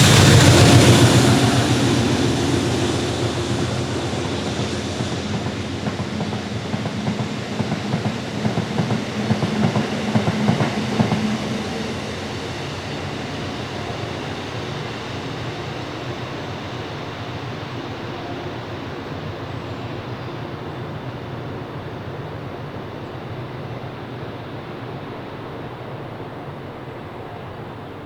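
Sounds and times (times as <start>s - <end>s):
steady low drone: 0.0s - 17.4s
train wheels clattering over rail joints: 0.0s - 17.6s.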